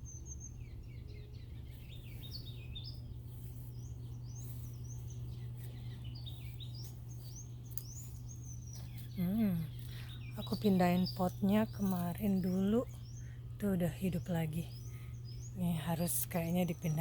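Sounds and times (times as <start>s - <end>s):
songbirds chirping and warbling: 0.0s - 17.0s
steady low hum: 0.0s - 17.0s.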